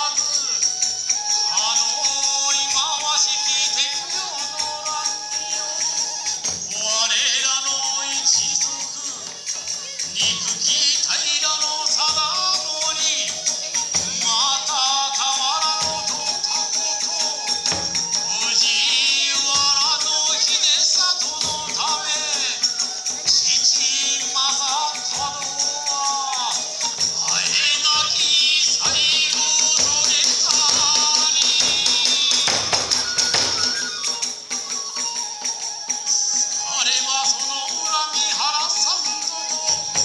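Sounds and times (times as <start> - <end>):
bamboo flute melody: 0.0 - 40.0
hand cymbals clashing: 0.0 - 40.0
drums in driving rhythm: 7.8 - 36.0.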